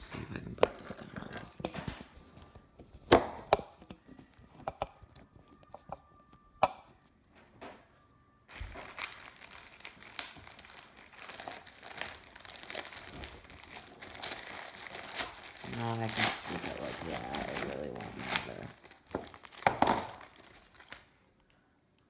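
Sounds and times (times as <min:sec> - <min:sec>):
shipping bag crinkling: 0:08.5 - 0:21.2
objects knocking being set down: 0:19.6 - 0:20.2.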